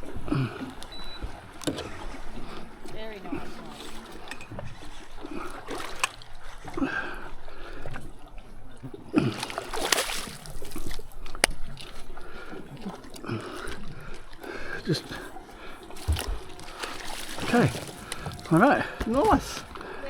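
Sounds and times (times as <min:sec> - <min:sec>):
water splashing: 0:00.0 - 0:20.0
fish knocking in boat: 0:09.2 - 0:20.0.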